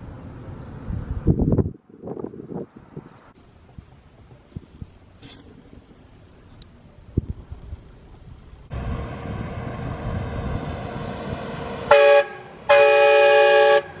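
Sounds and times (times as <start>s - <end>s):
air train horn blasts: 11.9s - 14.0s.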